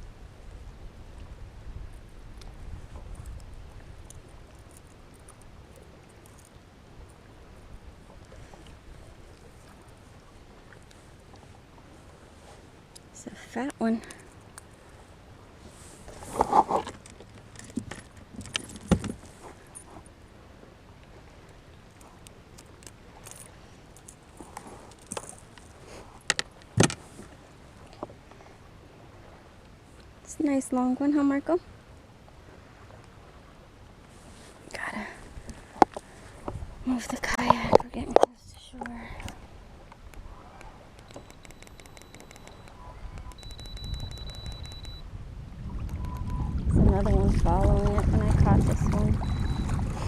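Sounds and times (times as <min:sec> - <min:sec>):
wind and water rumble: 0:00.0 - 0:50.0
fishing tackle clicks and rattles: 0:16.3 - 0:19.9, 0:21.9 - 0:27.0, 0:41.0 - 0:45.0.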